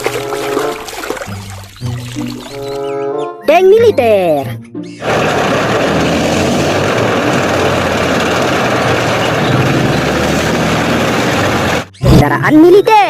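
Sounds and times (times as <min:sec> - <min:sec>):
motor-like drone with rushing hiss: 0:05.0 - 0:11.9.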